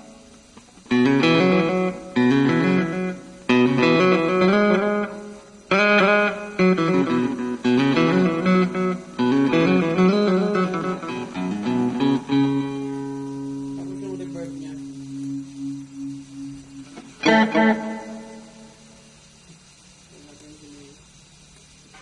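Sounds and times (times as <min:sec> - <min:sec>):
electric guitar playing: 0:00.0 - 0:20.1.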